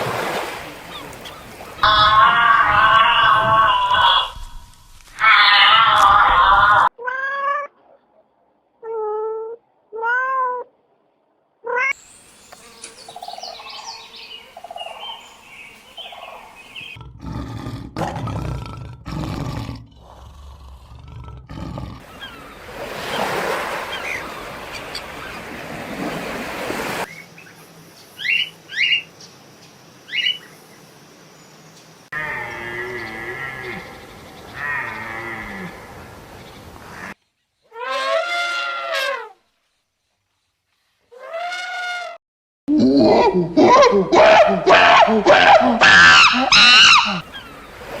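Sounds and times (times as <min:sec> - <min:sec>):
noisy animal sounds: 0:00.8 - 0:04.6, 0:05.2 - 0:10.7, 0:20.0 - 0:25.4, 0:32.0 - 0:36.1, 0:43.1 - 0:48.0
high whining animal calls: 0:01.8 - 0:04.6, 0:05.2 - 0:07.4, 0:43.6 - 0:47.6.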